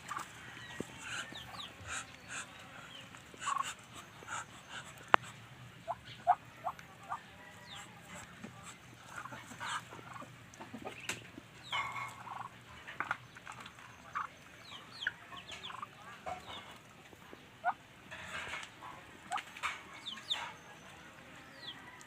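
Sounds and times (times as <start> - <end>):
ducklings peeping: 0.0 - 17.8, 18.6 - 21.8.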